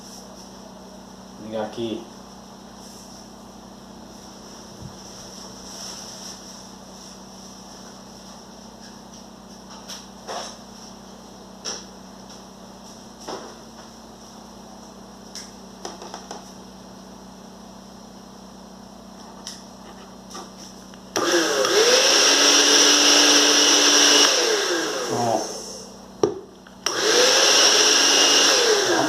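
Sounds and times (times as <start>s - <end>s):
blender motor running: 21.1s - 26.0s, 26.7s - 29.0s.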